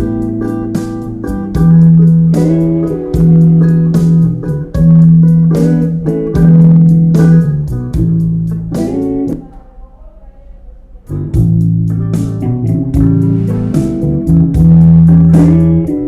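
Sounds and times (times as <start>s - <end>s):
bass guitar line: 0.0s - 9.4s, 11.2s - 16.0s
rock song through speaker: 0.0s - 9.4s.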